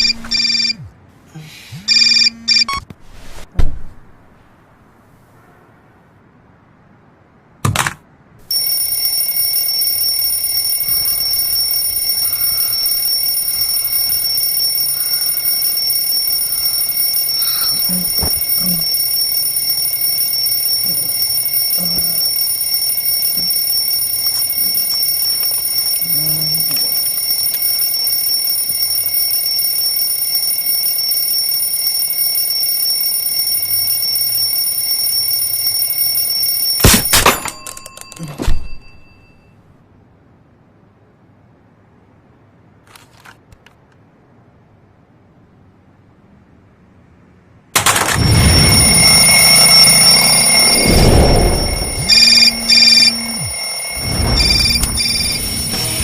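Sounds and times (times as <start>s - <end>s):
alarm clock ringing: 8.5s - 39.5s, 47.8s - 56.0s.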